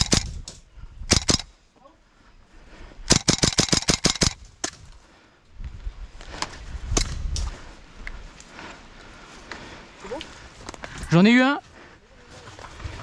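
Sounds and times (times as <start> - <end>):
airsoft gun shots: 0.0 - 0.5, 1.1 - 1.5, 3.1 - 4.4.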